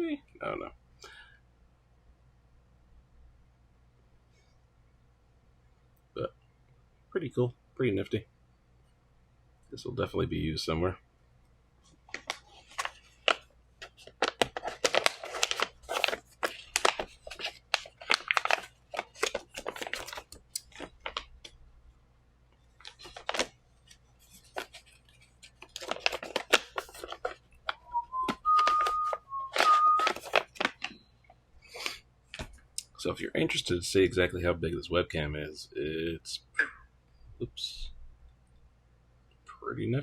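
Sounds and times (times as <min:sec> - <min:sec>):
plastic packaging crinkling: 0:12.0 - 0:21.6, 0:22.7 - 0:31.1.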